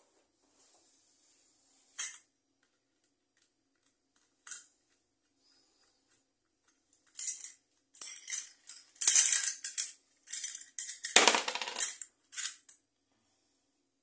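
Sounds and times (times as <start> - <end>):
small hard parts rattling: 6.6 - 12.8.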